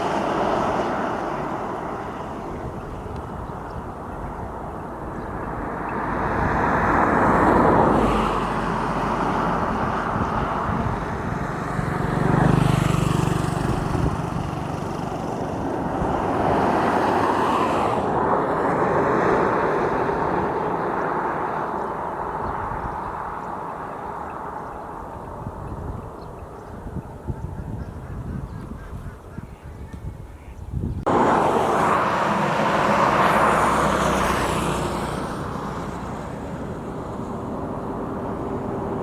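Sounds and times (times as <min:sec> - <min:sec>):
vehicles passing: 0:00.0 - 0:39.0
low engine hum: 0:30.9 - 0:39.0.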